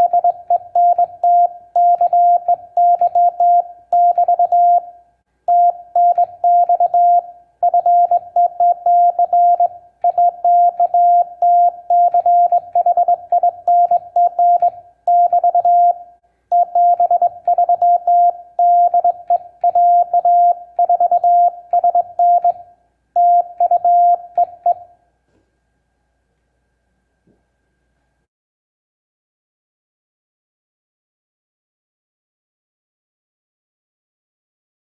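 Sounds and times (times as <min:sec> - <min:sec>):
morse code sidetone beeps: 0:00.0 - 0:24.9.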